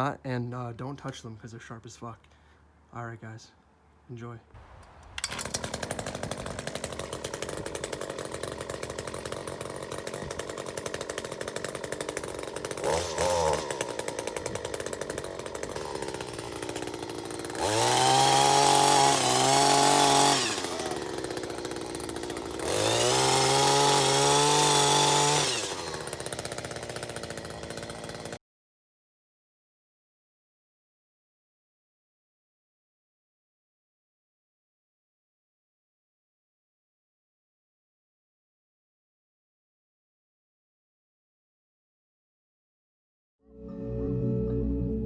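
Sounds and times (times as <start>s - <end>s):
hedge trimmer engine revving: 5.1s - 28.4s.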